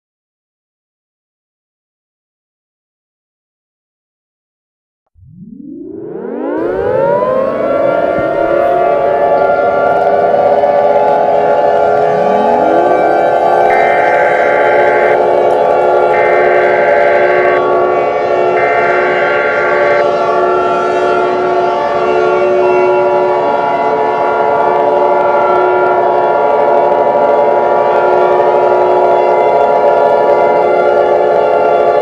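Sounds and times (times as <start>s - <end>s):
long held attention tone: 5.2s - 20.0s
steady droning chord: 5.2s - 32.0s
screechy data bursts: 11.1s - 17.6s.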